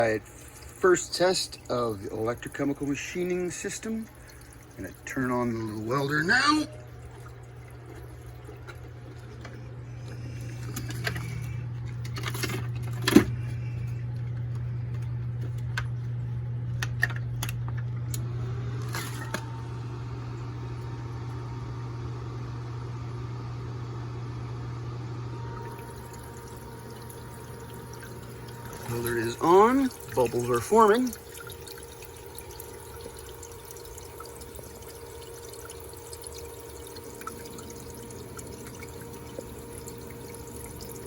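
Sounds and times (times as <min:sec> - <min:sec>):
liquid fizzing and bubbling: 0:00.0 - 0:13.8, 0:25.5 - 0:41.0
steady low hum: 0:00.0 - 0:41.0.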